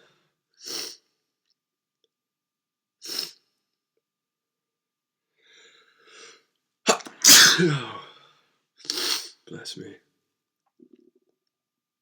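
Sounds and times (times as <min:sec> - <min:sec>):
breathy in-breath: 0:05.4 - 0:06.5.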